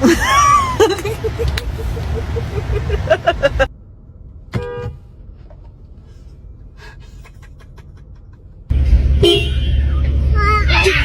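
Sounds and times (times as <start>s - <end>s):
car horn beep: 4.5s - 5.0s, 9.2s - 10.0s
loud low rumble: 8.7s - 11.0s.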